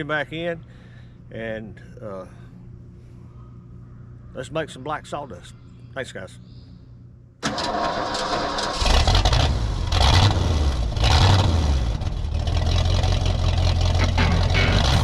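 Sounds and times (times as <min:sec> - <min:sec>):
sawmill engine revving: 0:08.0 - 0:15.0.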